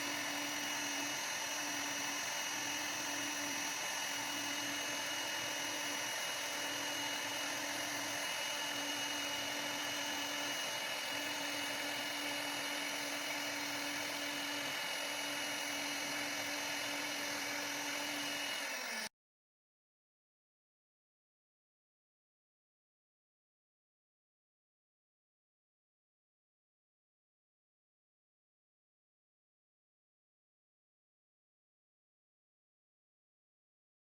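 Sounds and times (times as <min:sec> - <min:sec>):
router spindle whining: 0:00.0 - 0:19.1.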